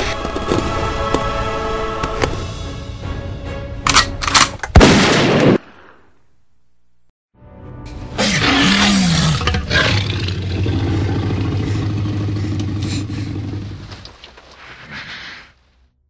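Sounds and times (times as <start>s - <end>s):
dinosaur roar: 8.2s - 14.1s.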